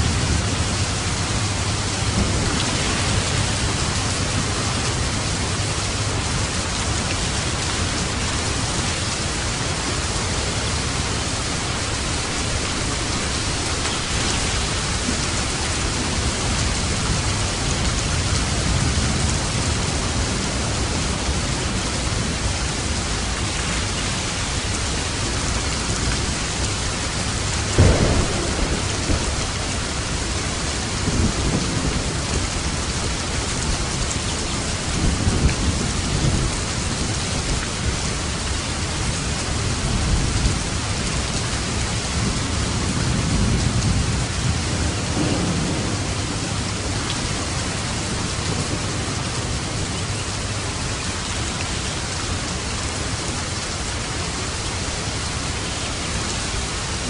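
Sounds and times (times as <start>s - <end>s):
low rolling thunder: 0.0s - 50.8s
rain on a roof: 0.0s - 57.0s
sharp thunderclap: 27.7s - 32.4s, 43.1s - 46.9s.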